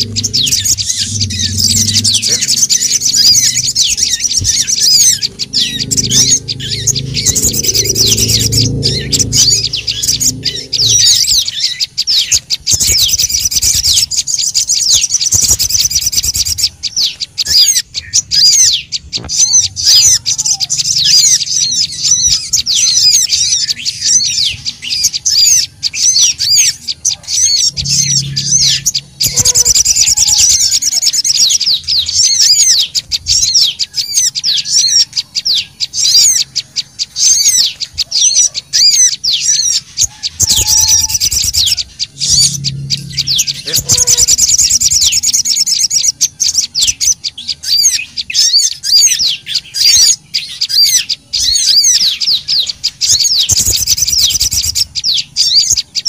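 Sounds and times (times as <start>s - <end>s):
low rumble: 0.0s - 11.8s, 27.2s - 30.8s, 39.2s - 45.3s
birds twittering chorus: 0.0s - 56.0s.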